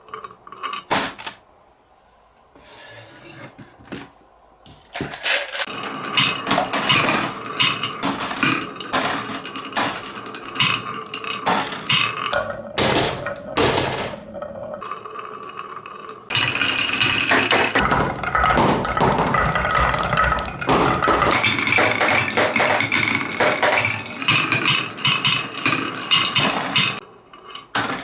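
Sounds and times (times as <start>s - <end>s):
marbles clattering on metal cans: 4.9s - 28.0s.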